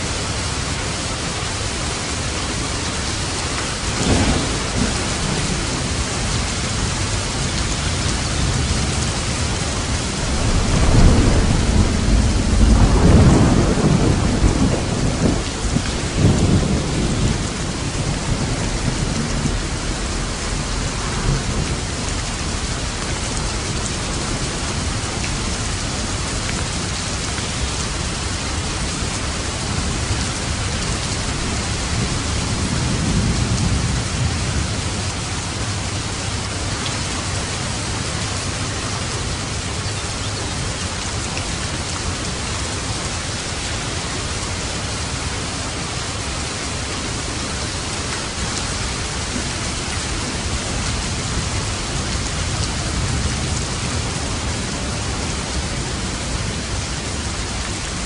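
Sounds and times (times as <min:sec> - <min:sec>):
heavy rain hissing: 0:00.0 - 0:58.0
thunder rumbling: 0:03.4 - 0:39.1.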